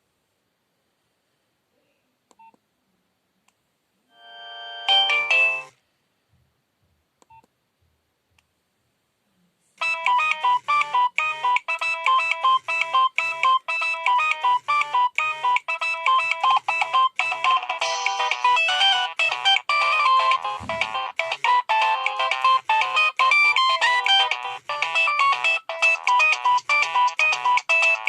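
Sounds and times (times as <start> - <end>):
mobile phone ringtone: 4.1 - 5.7, 9.8 - 28.0.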